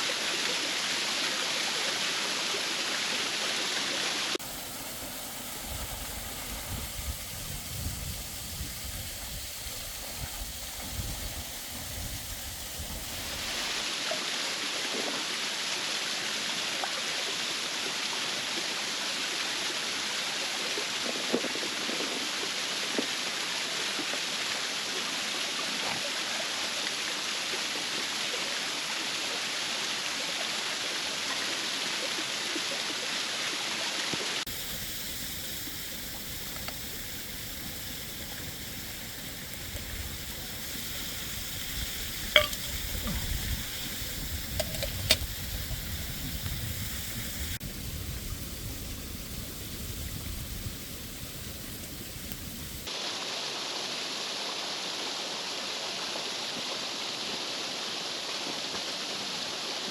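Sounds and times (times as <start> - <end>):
waterfall rushing: 3.8 - 14.1, 34.4 - 47.8.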